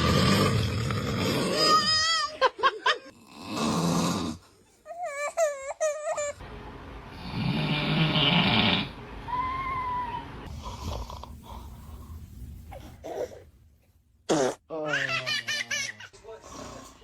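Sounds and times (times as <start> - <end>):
pet snoring: 7.1 - 9.0.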